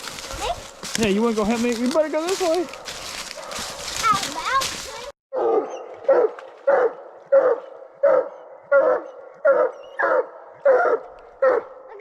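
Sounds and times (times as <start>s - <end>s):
hound barking: 0.1s - 0.7s, 2.3s - 4.3s, 5.3s - 12.0s.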